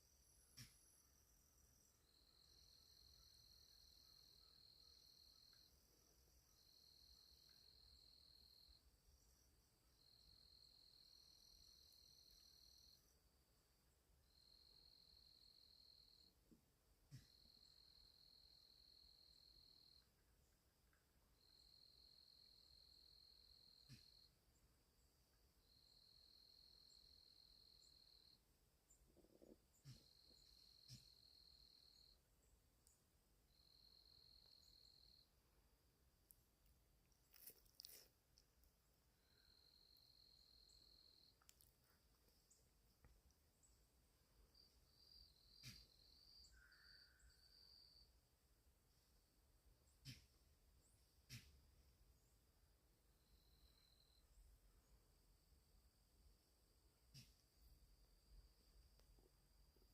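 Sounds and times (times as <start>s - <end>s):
faint insect trilling: 0.0s - 13.2s, 25.6s - 32.2s, 32.8s - 35.5s, 39.0s - 42.8s, 43.6s - 48.3s.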